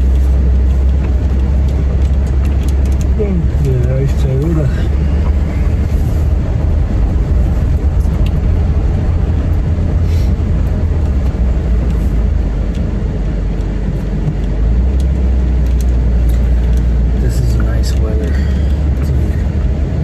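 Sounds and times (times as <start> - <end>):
vehicle rumble inside cabin: 0.0 - 20.0.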